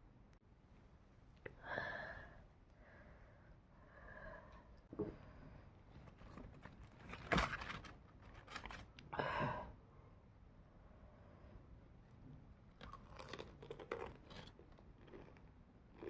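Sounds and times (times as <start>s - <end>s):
crunching of fried chicken: 12.7s - 16.0s.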